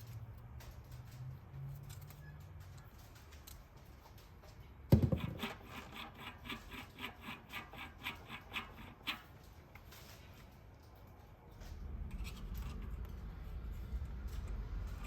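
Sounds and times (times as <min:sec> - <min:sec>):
evenly spaced clicks: 0:00.0 - 0:04.4
sharp knock: 0:04.9 - 0:05.5.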